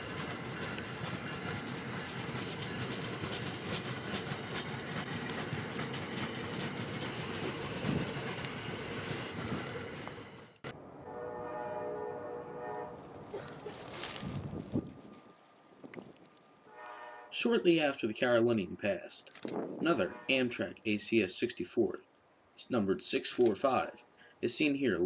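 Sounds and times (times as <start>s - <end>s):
wheels clicking over rail joints: 0.0s - 10.8s
passenger train rumbling past: 0.0s - 18.8s
train horn chord: 11.0s - 13.3s, 16.6s - 17.4s, 20.0s - 20.6s.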